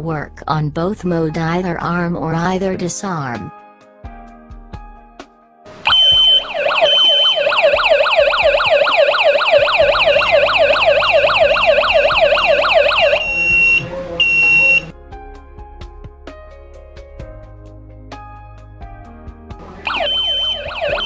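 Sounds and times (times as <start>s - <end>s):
fast sweeping siren wail: 5.8s - 14.9s, 19.7s - 21.0s
steady high beeps: 5.9s - 14.9s, 19.9s - 21.0s.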